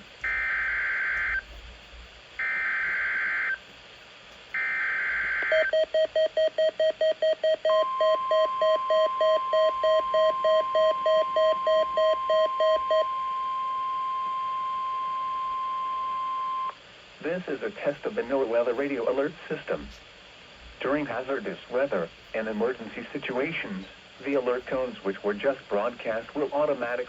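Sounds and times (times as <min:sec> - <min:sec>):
buzzy digital data bursts: 0:00.0 - 0:03.6.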